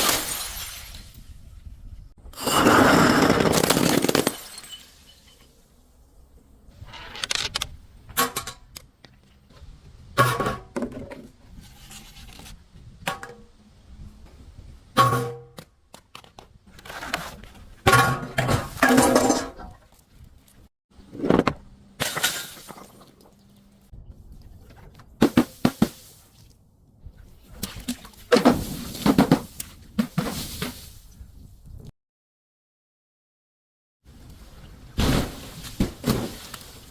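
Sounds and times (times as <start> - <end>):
objects smashing and crunching: 0.0 - 1.2, 2.5 - 5.3.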